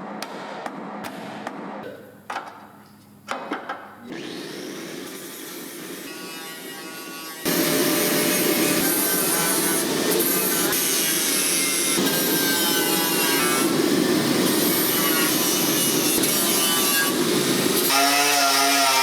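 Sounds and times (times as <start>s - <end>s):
power tool rasping on sheet metal: 4.1s - 19.0s.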